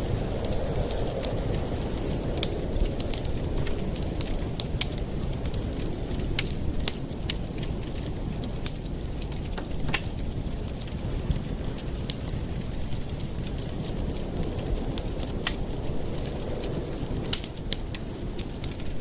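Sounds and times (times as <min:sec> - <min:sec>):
burning wood crackling and popping: 0:00.0 - 0:19.0
campfire flames rumbling: 0:00.0 - 0:19.0.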